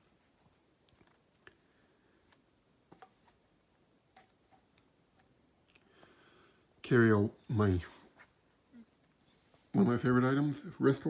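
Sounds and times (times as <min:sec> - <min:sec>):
faint small clicks: 0:00.8 - 0:01.6.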